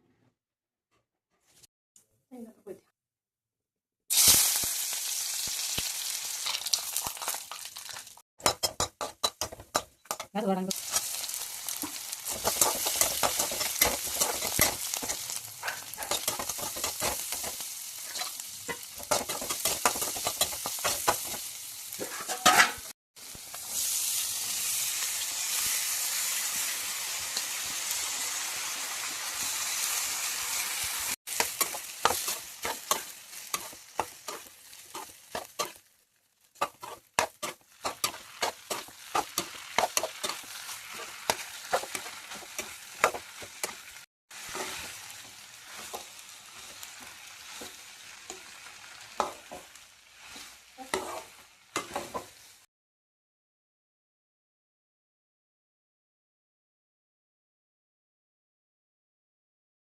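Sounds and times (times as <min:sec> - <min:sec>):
food sizzling in oil: 0:04.1 - 0:52.7
spatula scraping pan: 0:08.4 - 0:21.4, 0:22.0 - 0:22.9, 0:31.3 - 0:35.9, 0:36.6 - 0:52.5.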